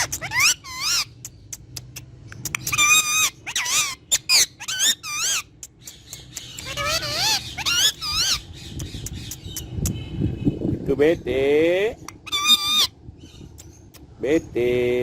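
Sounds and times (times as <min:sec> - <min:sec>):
parrot squawks and chirps: 0:00.0 - 0:10.1, 0:12.0 - 0:13.9
parrot sharp clicks: 0:01.2 - 0:02.9.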